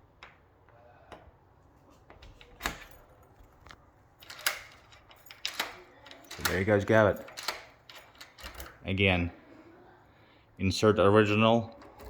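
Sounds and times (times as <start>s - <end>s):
key clicking in lock: 2.4s - 8.9s.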